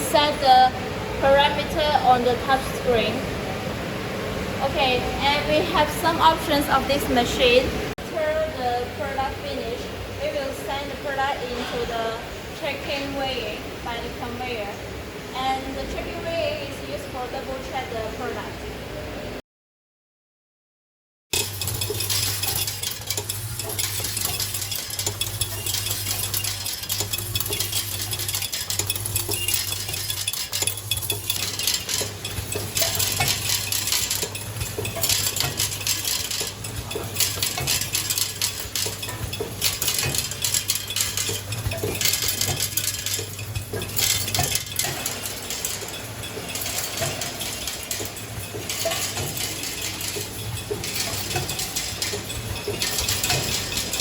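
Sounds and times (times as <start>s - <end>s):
vibratory feed plate humming: 21.3s - 54.0s
metal screws rattling: 21.4s - 54.0s.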